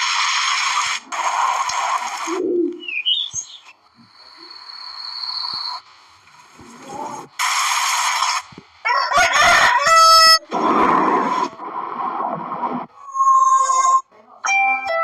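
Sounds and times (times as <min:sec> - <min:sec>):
bursts of harsh noise: 0:00.0 - 0:14.1
bird-like chirps: 0:02.4 - 0:05.9.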